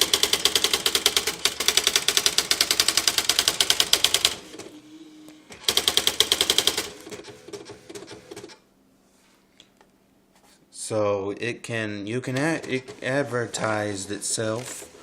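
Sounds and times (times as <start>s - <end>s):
typewriter printing: 0.0s - 4.8s, 5.5s - 8.6s, 12.3s - 15.0s.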